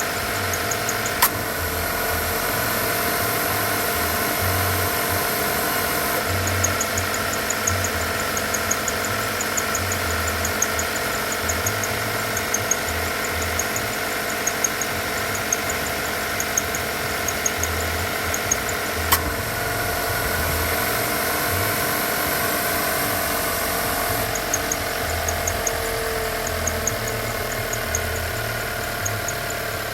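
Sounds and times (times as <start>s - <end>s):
light ticking: 0.0s - 1.6s, 3.2s - 19.4s, 21.5s - 29.9s
car engine idling: 0.0s - 29.9s
sharp click: 0.4s - 1.5s, 6.2s - 19.4s.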